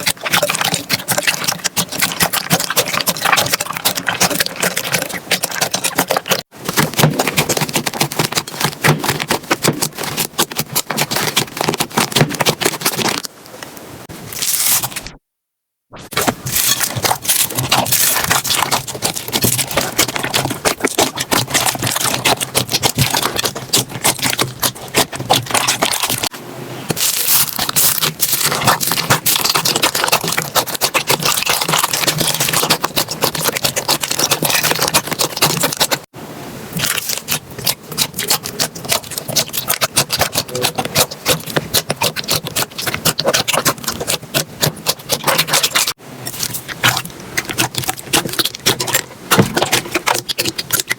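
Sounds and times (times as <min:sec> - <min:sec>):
slime squished by hand: 0:00.0 - 0:13.3, 0:16.0 - 0:26.3, 0:26.9 - 0:36.0, 0:36.8 - 0:50.9.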